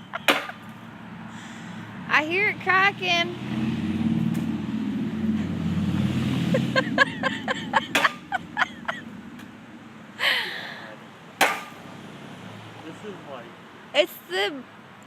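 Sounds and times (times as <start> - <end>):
vehicle engine rumbling past: 0.0 - 10.0
sharp knocks: 0.2 - 0.6, 7.9 - 8.3, 11.4 - 11.8.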